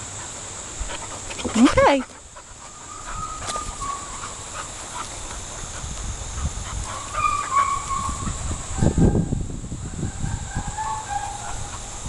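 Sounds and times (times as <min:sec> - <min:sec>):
rustling and movement: 0:00.0 - 0:09.0
dog whining: 0:02.8 - 0:04.5, 0:07.0 - 0:09.3.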